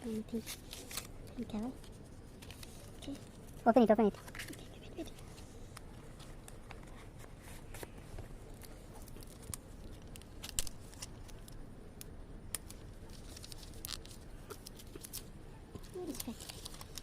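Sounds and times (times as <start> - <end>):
packaging clicks and rustles: 12.6 - 17.0.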